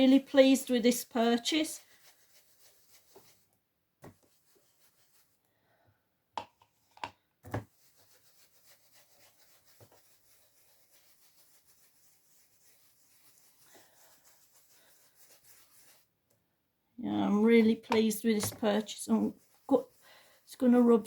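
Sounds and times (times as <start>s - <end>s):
faint rubbing: 7.7s - 16.1s, 17.4s - 21.0s.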